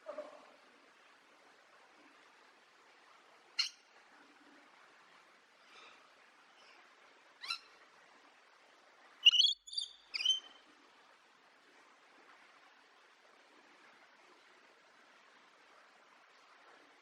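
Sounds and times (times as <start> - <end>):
parrot calling: 9.2 - 10.4.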